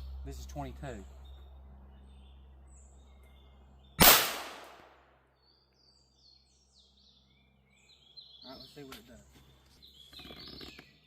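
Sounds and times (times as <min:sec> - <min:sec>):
gunshot crack: 0:04.0 - 0:05.0.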